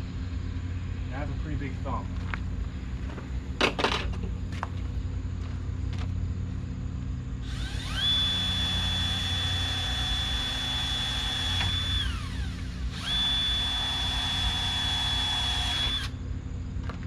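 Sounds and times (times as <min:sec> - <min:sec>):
low hum: 0:00.0 - 0:17.0
electric drill whining: 0:07.4 - 0:16.2.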